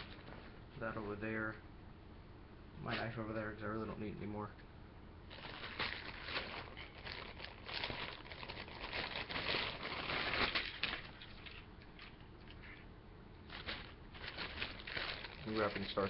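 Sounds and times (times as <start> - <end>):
plastic packaging crinkling: 5.3 - 12.7, 13.4 - 16.0.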